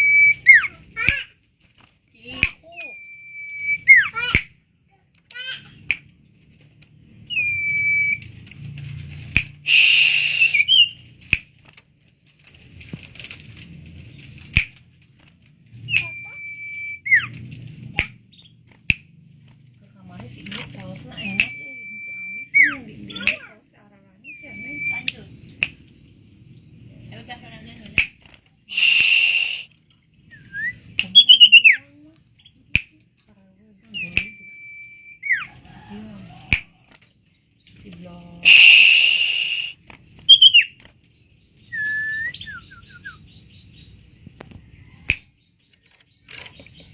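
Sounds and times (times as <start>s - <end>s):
bird whistling song: 0.0s - 1.2s, 2.2s - 4.4s, 7.2s - 8.6s, 9.4s - 11.3s, 15.7s - 17.4s, 21.0s - 23.5s, 24.2s - 25.9s, 28.7s - 32.7s, 33.9s - 35.6s, 38.4s - 44.1s
sharp single clicks: 4.3s - 4.6s, 20.4s - 21.6s, 23.2s - 23.5s, 25.5s - 26.0s, 32.7s - 33.1s, 34.0s - 34.4s, 36.5s - 37.8s, 44.4s - 46.9s
harsh bird chattering: 9.6s - 11.4s, 20.3s - 23.6s, 27.1s - 29.8s, 30.6s - 32.7s, 38.4s - 40.8s.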